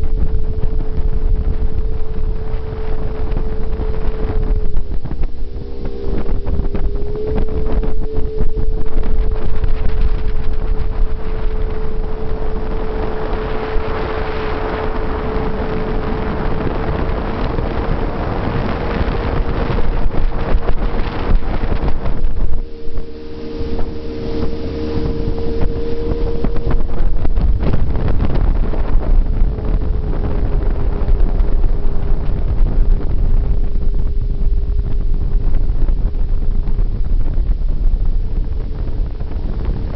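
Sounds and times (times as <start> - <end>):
jet boat engine running: 0.0 - 39.9
water rushing past hull: 0.0 - 39.9
wind buffeting microphone: 0.0 - 39.9.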